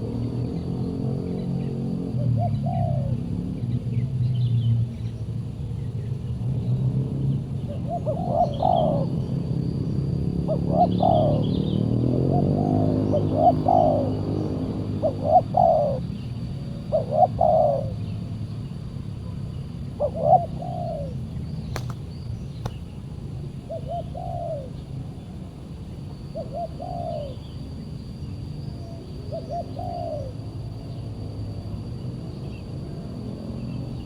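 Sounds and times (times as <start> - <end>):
doves cooing: 7.9 - 9.2, 10.5 - 18.2, 19.9 - 22.8, 23.7 - 24.9
sharp clicks: 21.7 - 22.8.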